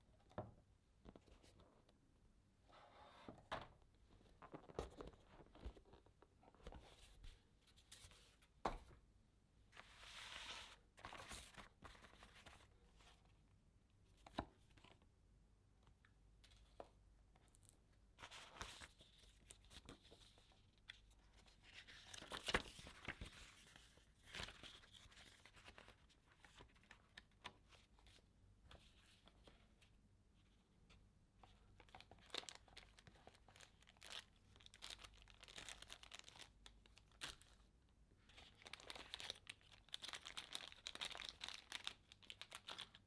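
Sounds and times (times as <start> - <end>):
packaging rustling and tearing: 32.0 - 37.6, 38.4 - 43.0.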